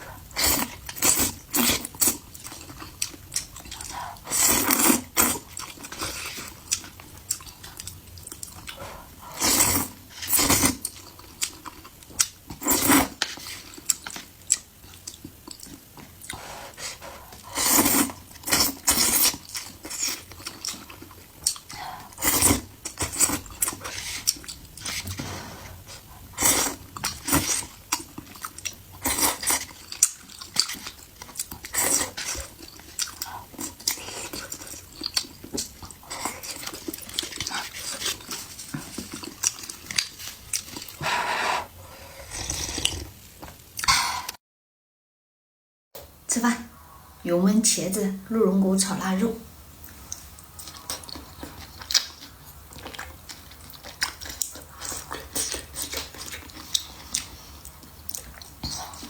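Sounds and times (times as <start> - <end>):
person chewing food: 0.0 - 44.4, 49.8 - 59.0.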